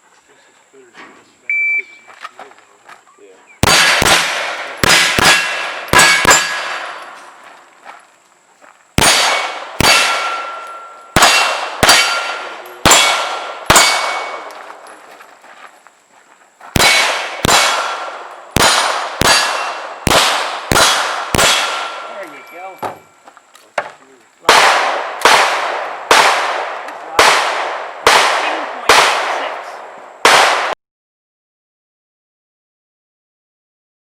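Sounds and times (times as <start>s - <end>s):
pistol shots: 3.6s - 7.2s, 9.0s - 14.8s, 16.8s - 22.5s, 24.5s - 30.8s
steel target ringing clang: 4.9s - 7.1s, 9.0s - 14.5s, 18.6s - 19.8s, 20.7s - 23.2s.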